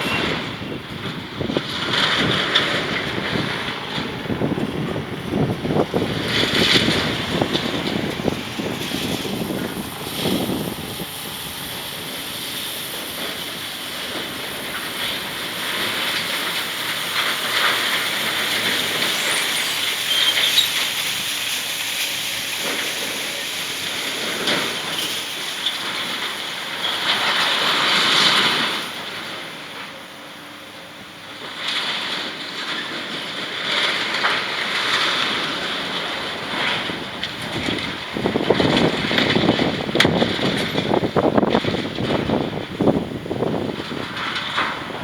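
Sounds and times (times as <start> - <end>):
excavator engine running: 0.0 - 45.0
debris crunching and scraping: 0.1 - 29.6.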